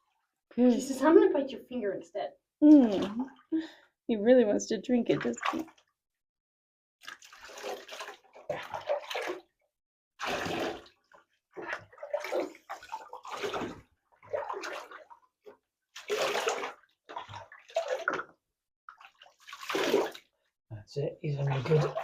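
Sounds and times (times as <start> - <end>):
bath water splashing: 2.7 - 3.7, 5.0 - 5.9, 7.0 - 9.6, 10.2 - 20.4, 21.4 - 22.0.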